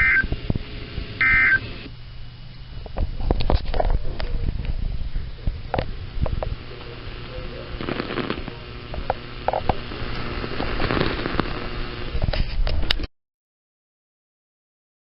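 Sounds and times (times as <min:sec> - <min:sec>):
crackling noise: 0:00.0 - 0:13.1.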